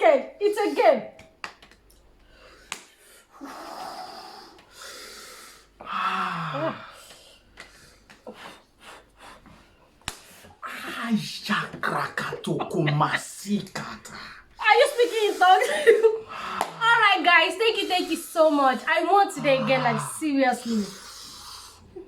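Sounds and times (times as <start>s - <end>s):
heavy breathing: 2.2s - 11.0s, 14.0s - 22.0s
person breathing in hissing: 2.3s - 10.6s, 19.4s - 21.9s
person moaning: 5.8s - 7.0s, 17.8s - 21.1s.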